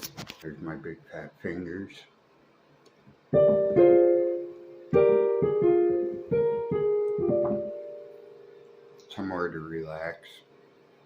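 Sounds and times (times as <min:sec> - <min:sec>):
keyboard chords ringing: 0:03.4 - 0:09.1.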